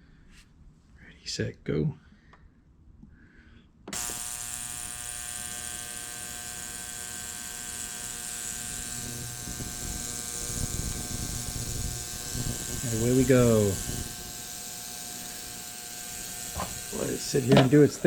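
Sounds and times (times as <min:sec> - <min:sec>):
ultrasonic cleaner buzzing and hissing: 0:03.9 - 0:18.0
ultrasonic cleaner switching on: 0:03.9 - 0:18.0.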